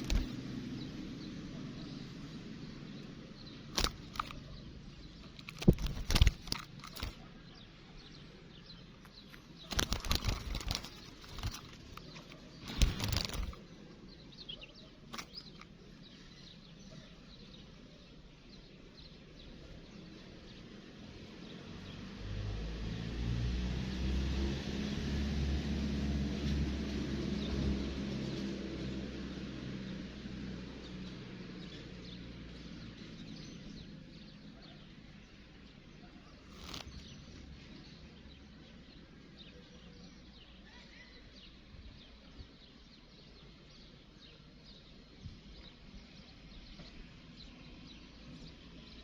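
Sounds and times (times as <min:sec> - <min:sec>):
rustles: 0:00.0 - 0:00.5, 0:03.6 - 0:07.6, 0:08.8 - 0:13.9, 0:15.0 - 0:16.3, 0:36.1 - 0:38.0
faint bird twittering: 0:00.0 - 0:20.9, 0:31.6 - 0:49.0.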